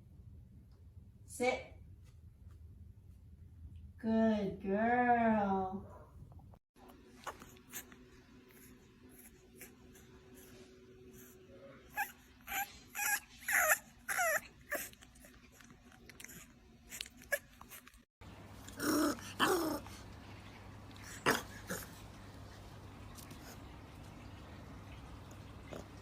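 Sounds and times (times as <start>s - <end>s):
dog crying: 11.9s - 15.6s
puppy whining and yipping: 11.9s - 17.9s.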